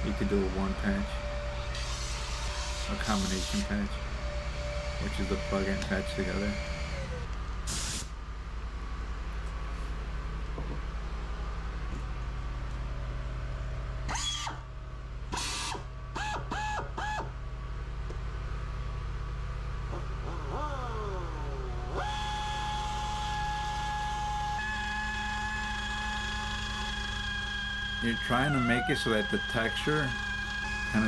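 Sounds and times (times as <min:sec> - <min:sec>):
pneumatic buffer whining: 0:00.0 - 0:08.2, 0:14.1 - 0:14.7, 0:15.3 - 0:17.4, 0:19.9 - 0:31.0
low machinery hum: 0:00.0 - 0:31.0.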